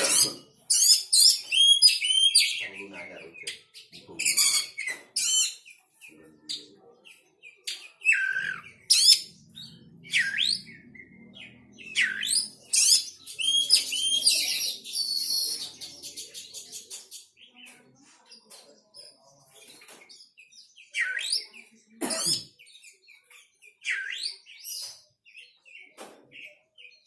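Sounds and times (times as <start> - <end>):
songbird chirping: 0.0 - 27.0.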